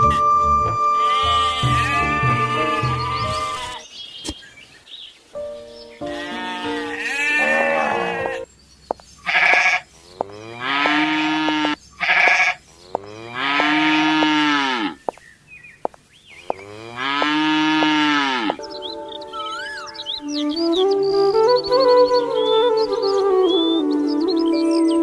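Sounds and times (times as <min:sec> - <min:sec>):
farm animals bleating: 0:00.0 - 0:03.8, 0:06.0 - 0:08.5, 0:09.2 - 0:15.0, 0:16.4 - 0:18.7.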